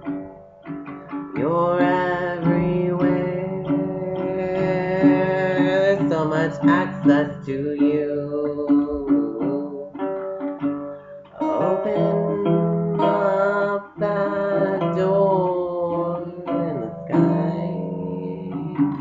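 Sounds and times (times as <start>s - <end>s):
acoustic guitar music: 0.0s - 19.0s.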